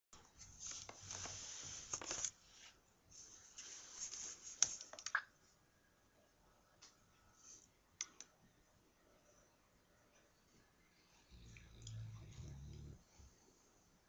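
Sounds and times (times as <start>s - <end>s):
dog snoring: 11.3s - 13.4s.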